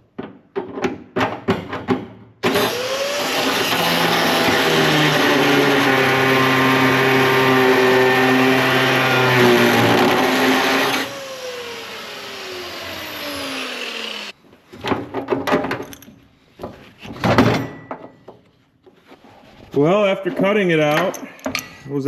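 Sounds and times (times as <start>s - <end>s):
angle grinder cutting metal: 2.4s - 14.4s
metal knocks and clatters: 14.7s - 18.5s.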